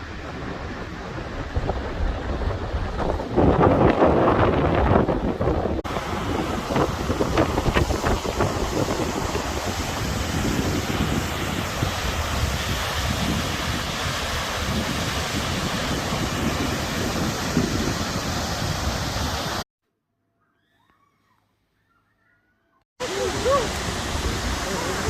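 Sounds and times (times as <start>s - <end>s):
wind buffeting the microphone: 0.0s - 19.6s, 23.0s - 25.0s
waterfall rushing water: 5.9s - 19.6s, 23.0s - 25.0s.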